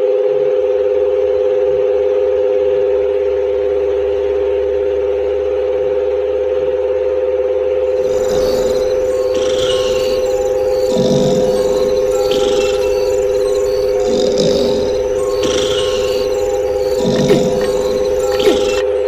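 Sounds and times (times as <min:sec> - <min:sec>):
steady two-tone hum: 0:07.9 - 0:19.0.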